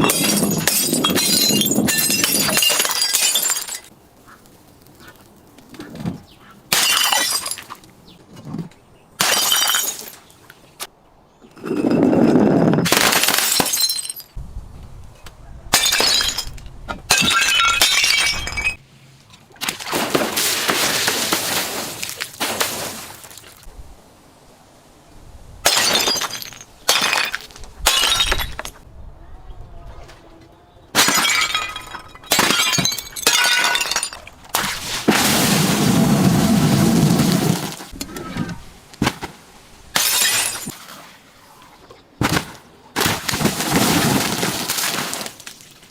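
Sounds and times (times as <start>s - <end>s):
glass bottles shattering: 0.0s - 3.9s, 6.7s - 7.8s, 9.2s - 10.2s, 12.8s - 14.4s, 15.7s - 18.8s, 25.6s - 28.7s, 31.0s - 36.1s, 40.0s - 40.8s.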